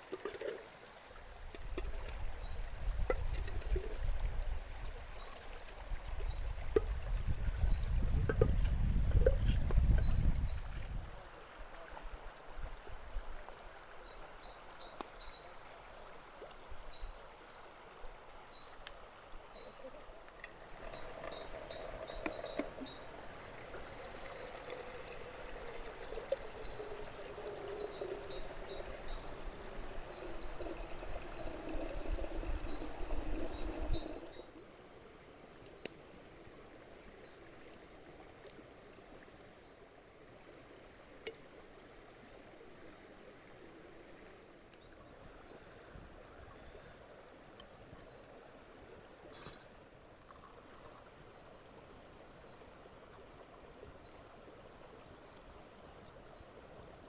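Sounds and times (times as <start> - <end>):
water pouring: 0.0 - 4.5, 20.4 - 34.6.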